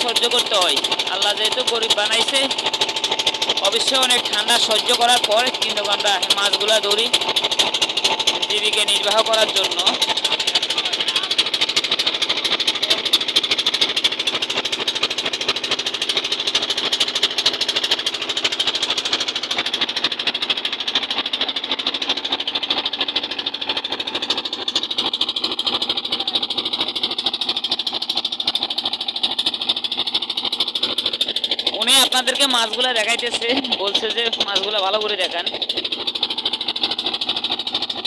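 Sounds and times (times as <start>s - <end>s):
small boat engine knocking: 0.0s - 38.0s.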